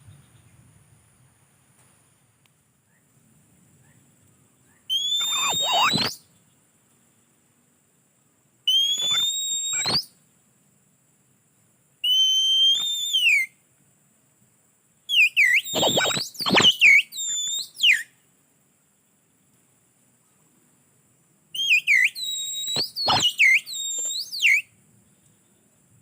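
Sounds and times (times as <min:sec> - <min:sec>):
bird singing whistled phrases: 0:04.7 - 0:06.3, 0:08.7 - 0:10.2, 0:12.0 - 0:13.5, 0:15.1 - 0:18.2, 0:21.6 - 0:24.7.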